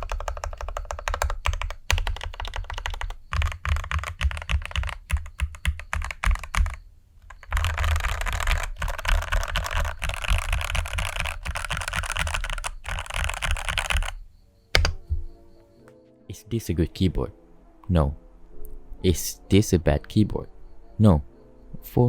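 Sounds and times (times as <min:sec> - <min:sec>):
typing on mechanical keyboard: 0:00.0 - 0:14.2, 0:14.8 - 0:15.1.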